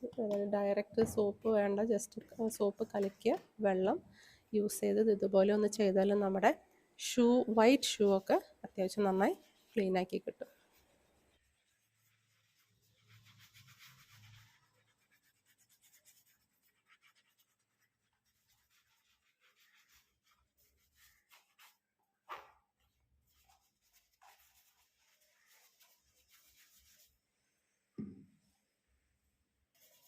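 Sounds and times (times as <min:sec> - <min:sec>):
brush scrubbing a shoe: 0:10.5 - 0:27.2, 0:29.7 - 0:30.0
knock: 0:28.0 - 0:28.3.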